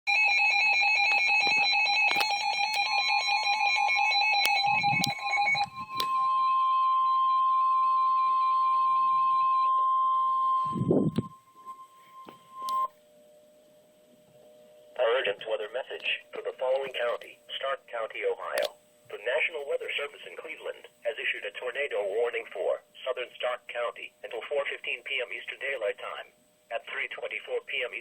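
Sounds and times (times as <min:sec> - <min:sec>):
rapid electronic alarm beeping: 0:00.1 - 0:13.0
steady warning alarm tone: 0:00.1 - 0:19.0.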